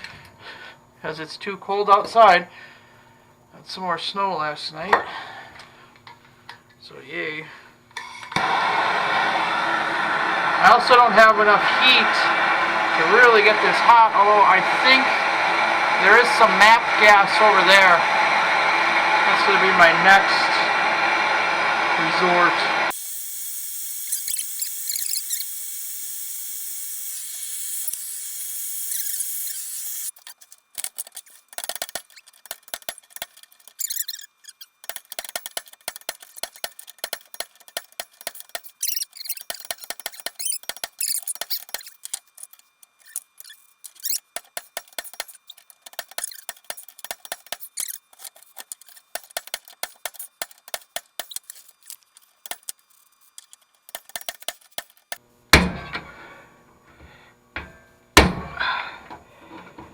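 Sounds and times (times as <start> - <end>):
gas torch flame hissing: 8.3 - 30.4
wrench clicking and squeaking: 24.0 - 25.6, 27.1 - 55.2
metal scraping on metal: 28.9 - 55.2.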